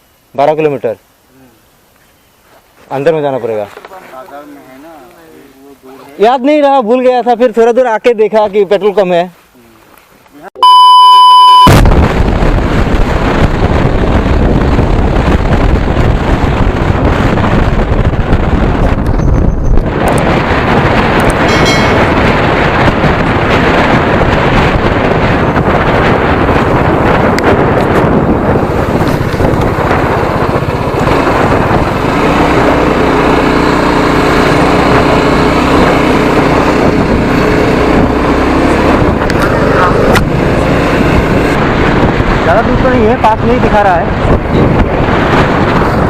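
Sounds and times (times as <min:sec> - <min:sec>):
wind rushing over microphone: 0:10.6 - 0:46.0
motorcycle engine: 0:27.8 - 0:42.4.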